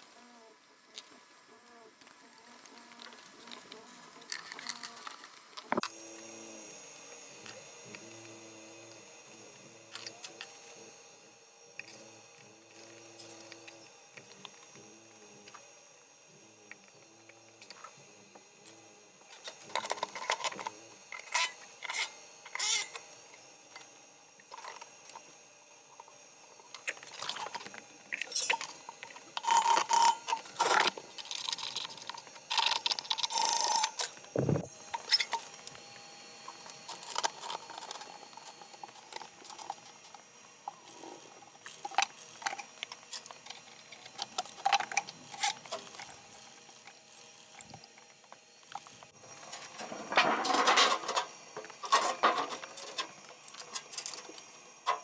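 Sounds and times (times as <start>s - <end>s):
metal parts and tools clanking: 26.7s - 35.4s, 49.4s - 55.0s.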